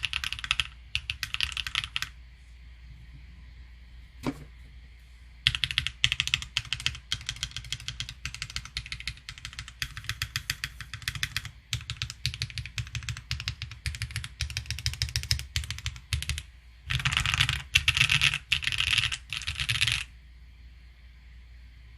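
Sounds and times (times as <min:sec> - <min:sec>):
mechanical keyboard typing: 0:00.0 - 0:02.2, 0:05.4 - 0:20.1.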